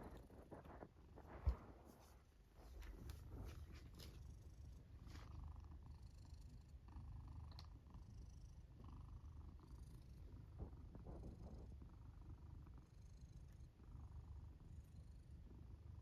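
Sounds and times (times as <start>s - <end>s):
cat purring: 0.0s - 16.0s.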